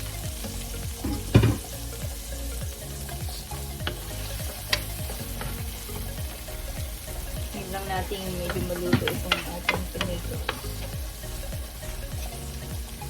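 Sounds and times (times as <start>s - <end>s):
vegetables sizzling in oil: 0.0s - 13.0s
utensil knocking against pan: 8.4s - 10.6s.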